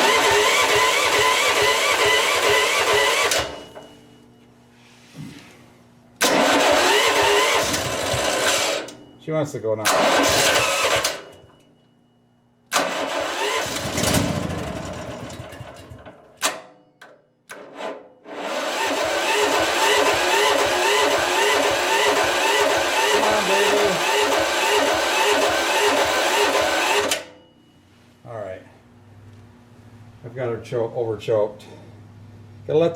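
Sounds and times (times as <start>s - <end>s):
engine cranking by electric starter: 0.0s - 4.0s, 6.2s - 9.1s, 9.8s - 11.7s, 12.7s - 16.7s, 17.5s - 27.4s.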